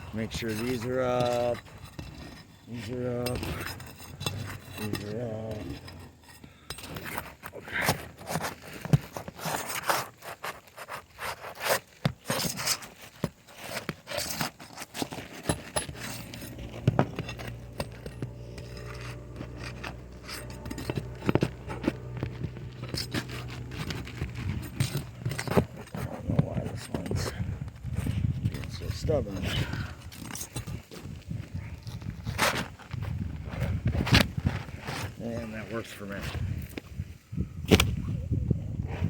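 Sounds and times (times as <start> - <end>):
pry bar scraping under shingles: 0.0 - 38.0
low steady hum: 15.6 - 30.4.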